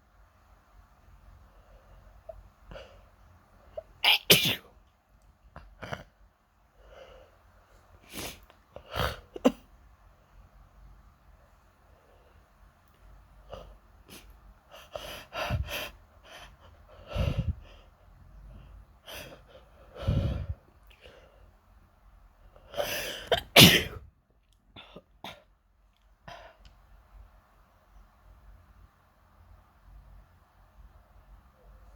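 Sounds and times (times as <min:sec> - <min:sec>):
person sneezing: 0:03.8 - 0:04.7, 0:08.1 - 0:09.6, 0:22.8 - 0:24.1
sniffs and intakes of breath: 0:06.8 - 0:09.2, 0:14.1 - 0:21.4.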